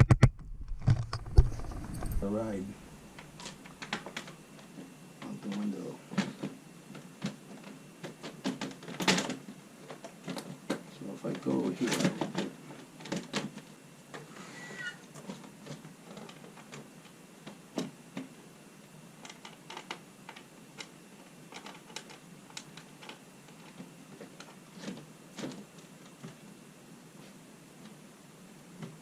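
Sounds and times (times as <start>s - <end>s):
high squeak: 14.4s - 15.0s.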